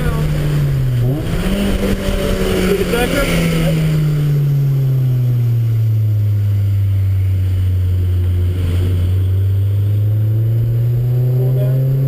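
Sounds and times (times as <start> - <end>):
car engine running: 0.0 - 12.0.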